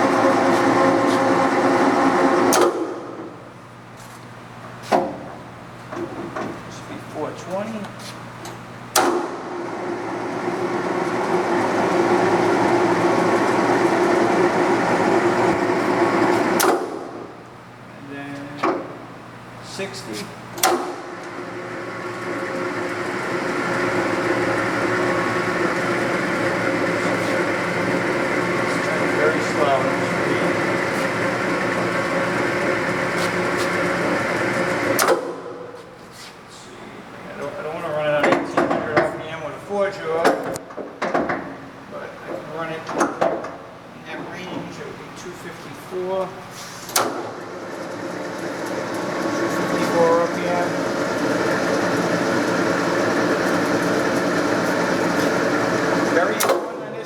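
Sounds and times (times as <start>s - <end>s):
metal lathe spinning with whine: 0.0s - 2.6s, 9.6s - 16.6s, 21.2s - 35.0s, 47.3s - 56.4s.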